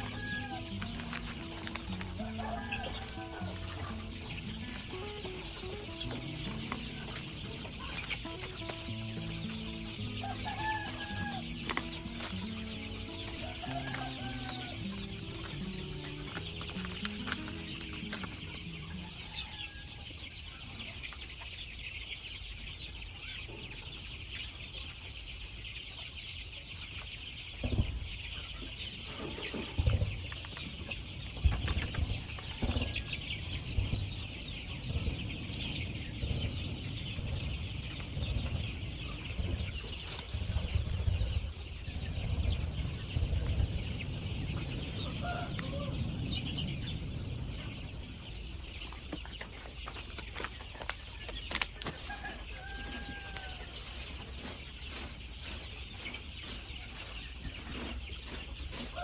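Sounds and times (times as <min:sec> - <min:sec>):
chickens clucking: 0:00.0 - 0:59.0
dull low thumps and rumbles: 0:29.8 - 0:50.2.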